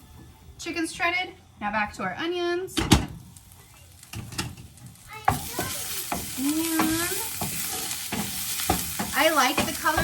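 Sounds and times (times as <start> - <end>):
onions sizzling in a pan: 2.7 - 10.0.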